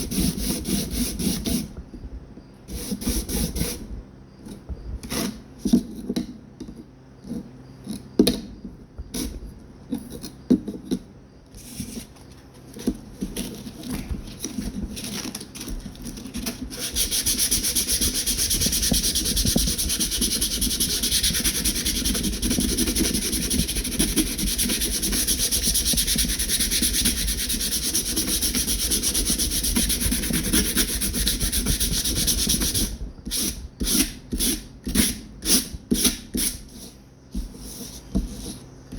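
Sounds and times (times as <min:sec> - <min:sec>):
sandpaper scrubbing by hand: 0:16.3 - 0:38.6.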